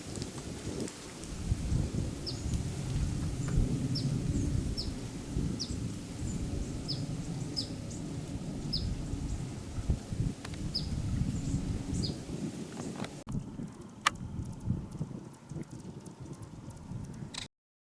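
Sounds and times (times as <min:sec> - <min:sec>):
steady low rumble: 0:01.2 - 0:17.5.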